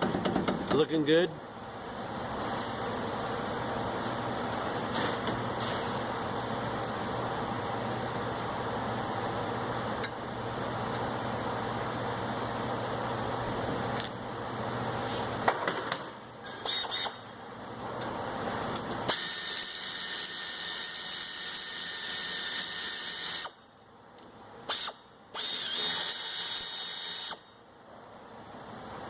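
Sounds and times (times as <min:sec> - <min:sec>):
power tool running in bursts: 0:19.1 - 0:23.6, 0:24.7 - 0:27.4.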